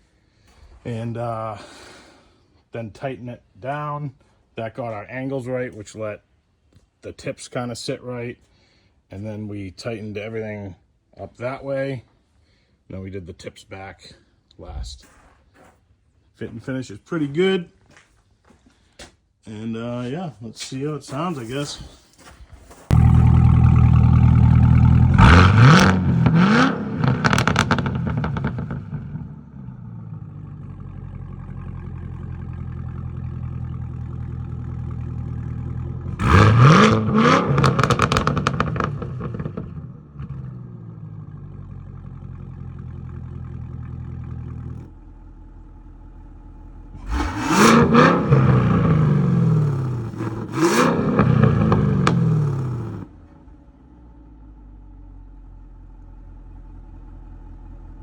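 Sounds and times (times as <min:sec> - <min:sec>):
car engine starting: 0:22.8 - 0:58.0
engine throttle blips: 0:22.9 - 0:54.9
car engine idling: 0:22.9 - 0:58.0.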